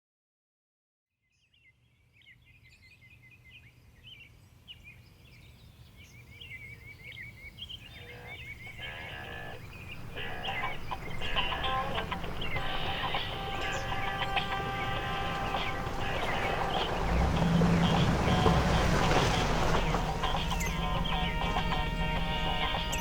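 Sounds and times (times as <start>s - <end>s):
birds chirping and twittering: 1.2s - 23.0s
low steady rumble: 9.6s - 23.0s
music: 10.1s - 23.0s.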